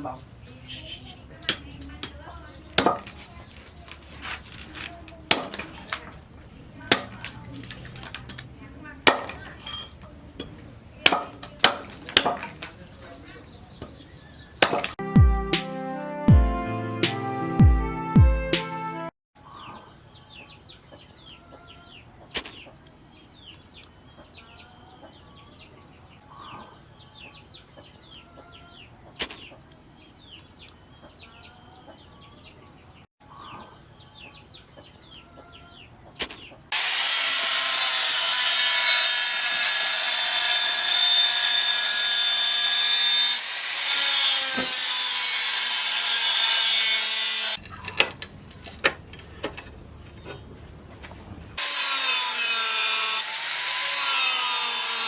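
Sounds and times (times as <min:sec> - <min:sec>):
loud power tool cutting: 0:36.7 - 0:47.6, 0:51.6 - 0:55.0.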